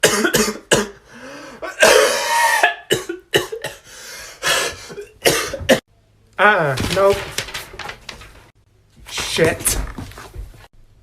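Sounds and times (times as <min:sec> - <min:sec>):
person coughing: 0:00.0 - 0:01.0, 0:01.6 - 0:03.9, 0:04.5 - 0:05.8.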